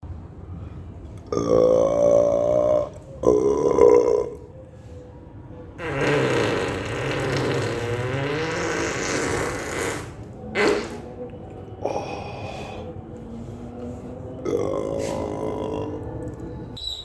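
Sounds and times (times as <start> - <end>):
man farting: 5.8 - 11.1.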